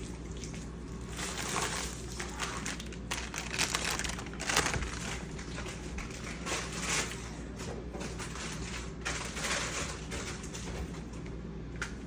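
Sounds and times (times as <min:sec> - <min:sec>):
plastic packaging crinkling: 0:01.1 - 0:07.2.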